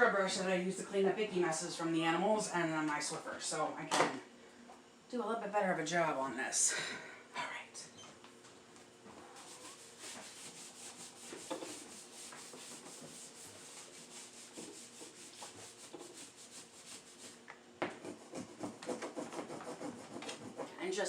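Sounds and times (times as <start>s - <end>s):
scrub brush scrubbing: 9.4s - 17.4s.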